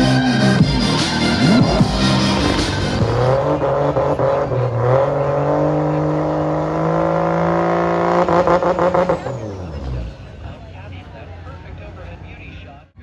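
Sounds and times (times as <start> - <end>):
drag car engine accelerating: 0.0 - 12.8
exhaust pops and crackles: 0.6 - 10.8.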